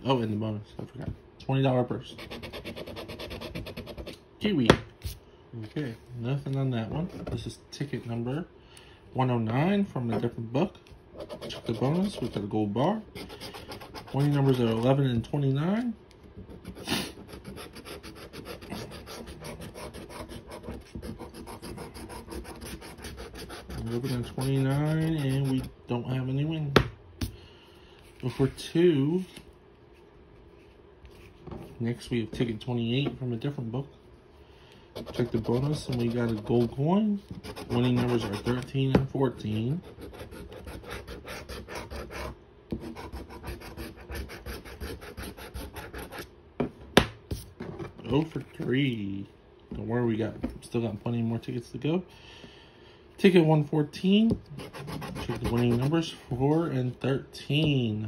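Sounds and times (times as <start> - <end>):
lottery ticket being scratched: 11.2 - 15.0, 16.6 - 25.7, 35.0 - 38.7, 54.6 - 56.1.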